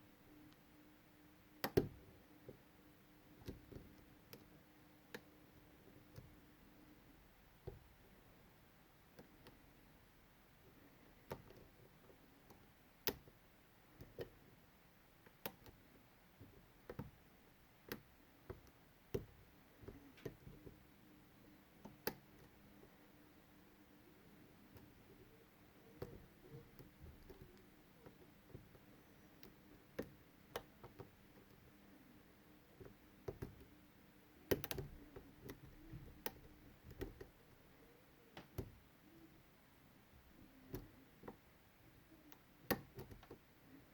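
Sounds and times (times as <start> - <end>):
lock pick clicks and taps: 1.6 - 2.6, 15.2 - 15.8, 29.4 - 31.6, 32.8 - 33.7, 34.5 - 37.3, 42.3 - 43.4.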